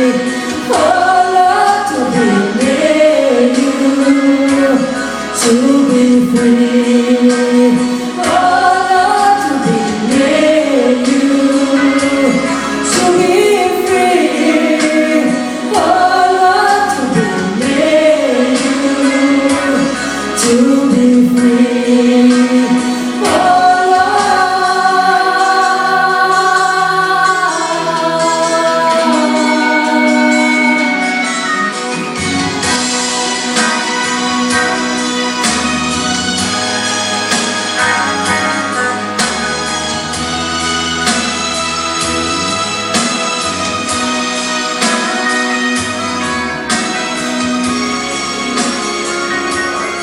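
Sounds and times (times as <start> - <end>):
woman singing over accompaniment: 0.0 - 32.0.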